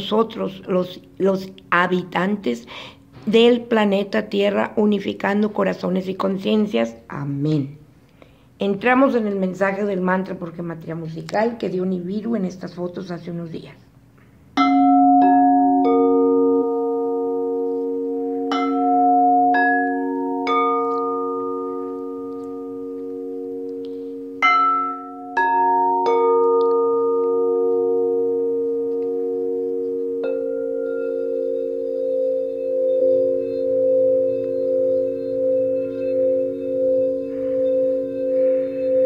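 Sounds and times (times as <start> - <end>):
crystal singing bowls ringing: 14.6 - 39.0.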